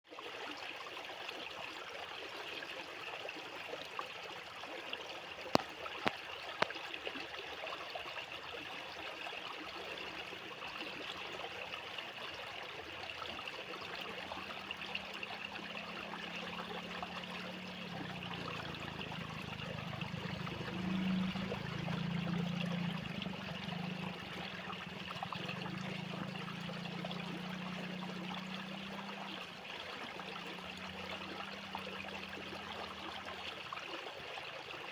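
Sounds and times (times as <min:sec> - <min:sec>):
fast-flowing water: 0:00.1 - 0:34.9
low hum: 0:13.0 - 0:33.4.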